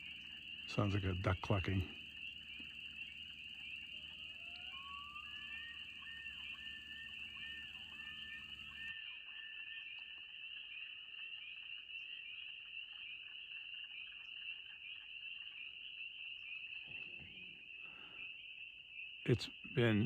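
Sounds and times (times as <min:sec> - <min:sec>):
spring peepers chorus: 0:00.0 - 0:20.0.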